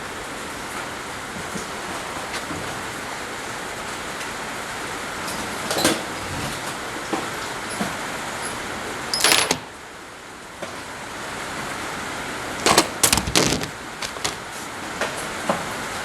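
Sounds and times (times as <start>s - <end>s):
tools and metal parts clattering: 7.7s - 9.7s, 12.6s - 15.3s.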